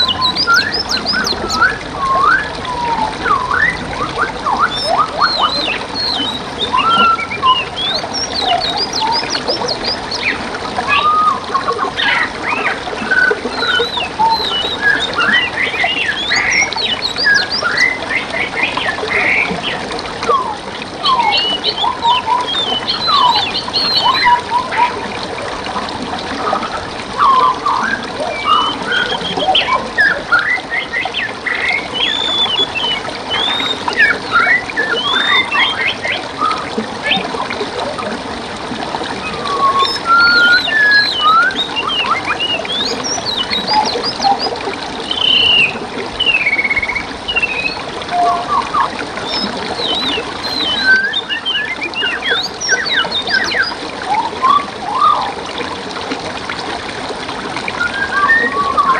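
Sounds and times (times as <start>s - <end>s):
songbirds chirping and trilling: 0.0s - 19.8s, 20.4s - 25.0s, 27.2s - 37.3s, 39.2s - 54.4s
stream trickling: 0.0s - 58.9s.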